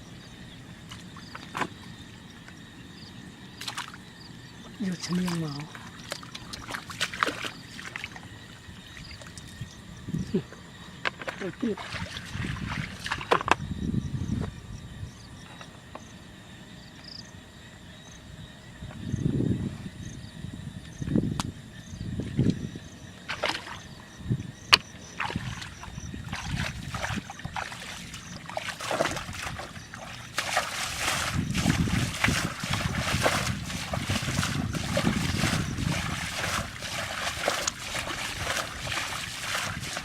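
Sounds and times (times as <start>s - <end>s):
water splashing and trickling: 3.6s - 4.1s, 4.8s - 10.1s, 11.2s - 13.6s, 22.2s - 24.0s, 25.0s - 40.0s.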